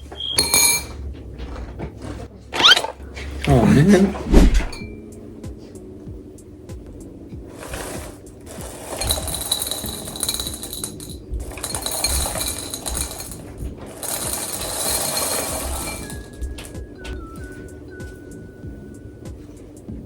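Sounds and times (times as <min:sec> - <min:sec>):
cereal rattling into a bowl: 0:07.6 - 0:16.8.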